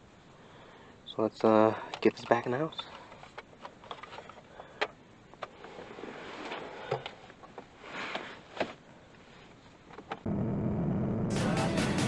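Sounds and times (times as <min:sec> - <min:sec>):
music: 0:11.3 - 0:12.0.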